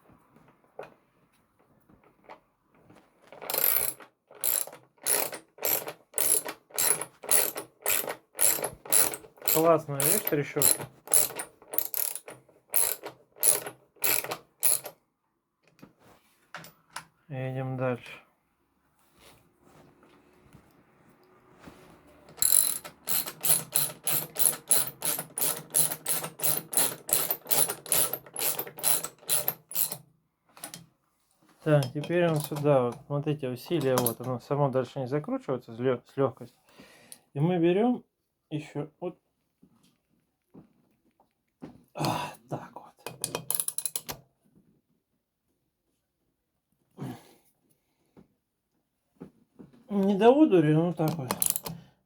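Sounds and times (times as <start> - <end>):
ratchet wrench clicking: 3.4 - 14.9, 22.4 - 30.0, 51.4 - 51.7.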